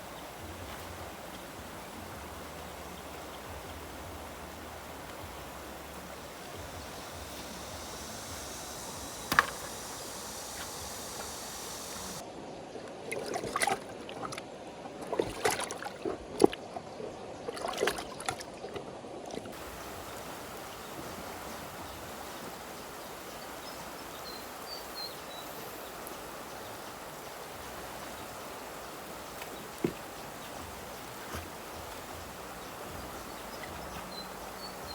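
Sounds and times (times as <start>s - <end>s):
flowing water: 0.0s - 34.9s
water sloshing and splashing: 13.1s - 22.7s, 27.4s - 34.9s.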